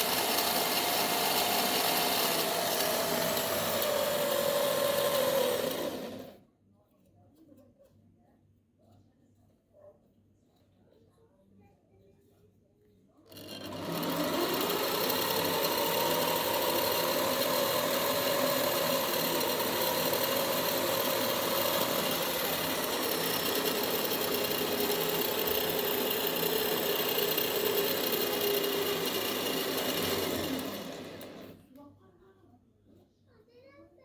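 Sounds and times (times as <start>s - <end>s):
belt sander running: 0.0s - 6.4s, 13.3s - 31.6s.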